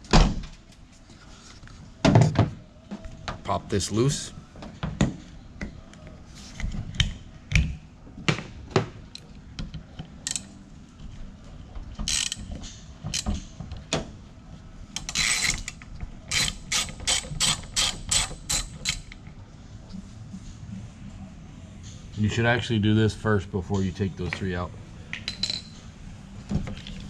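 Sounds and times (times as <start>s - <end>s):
ratchet wrench clicking: 10.3s - 10.5s, 12.1s - 12.5s, 15.0s - 19.2s.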